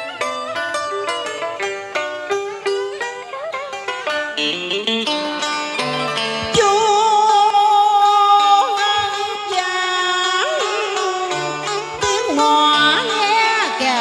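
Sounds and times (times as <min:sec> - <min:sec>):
held melody line with vibrato: 0:00.0 - 0:14.0
plucked strings playing melody: 0:00.0 - 0:14.0.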